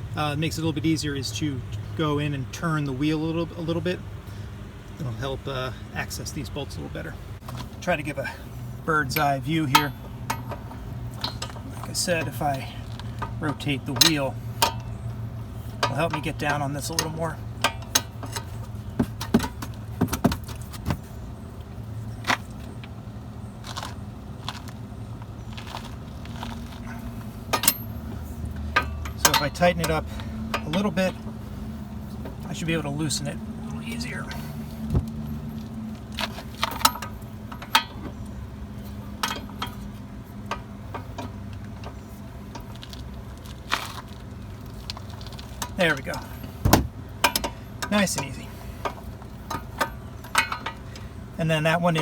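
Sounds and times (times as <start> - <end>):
low steady hum: 0.0 - 52.0
hand tools clinking on metal: 8.2 - 15.1, 15.7 - 19.8, 25.8 - 31.3, 35.2 - 39.9, 44.9 - 52.0.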